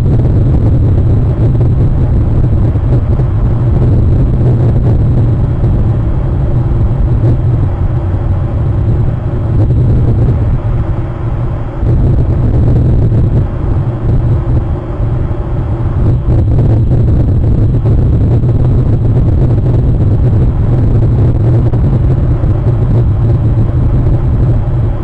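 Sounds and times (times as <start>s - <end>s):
low rumble: 0.0s - 25.0s.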